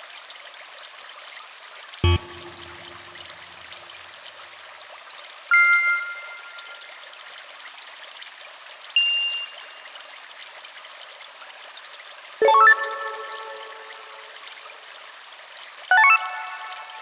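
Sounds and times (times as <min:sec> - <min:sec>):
bright two-tone chime: 0:02.0 - 0:03.2, 0:05.5 - 0:06.8, 0:12.4 - 0:14.3, 0:15.9 - 0:17.0
higher short chime: 0:02.0 - 0:03.3, 0:05.5 - 0:06.8, 0:12.4 - 0:14.4.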